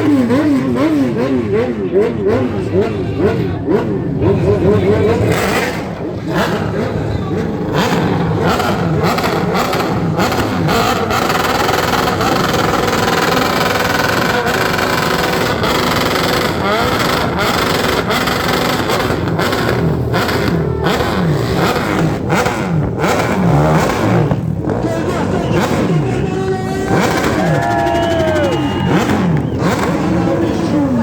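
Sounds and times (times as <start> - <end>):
motorcycle engines revving: 0.0 - 31.0.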